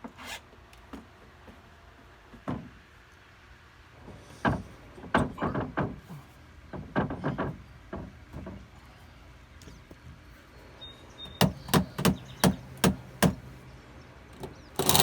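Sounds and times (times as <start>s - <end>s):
deck boards knocking and thudding: 11.4s - 13.5s.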